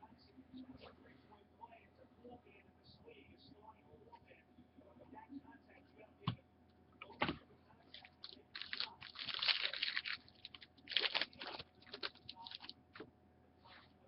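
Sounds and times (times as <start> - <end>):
wrapper crinkling: 7.9 - 12.7
card pack wrapper tearing: 8.0 - 12.7
cards being handled: 8.0 - 12.7.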